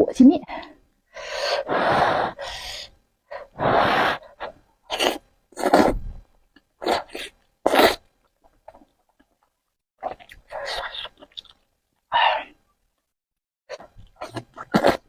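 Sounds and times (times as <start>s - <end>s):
person slurping noodles: 3.6s - 6.2s, 6.8s - 8.1s, 14.2s - 15.0s.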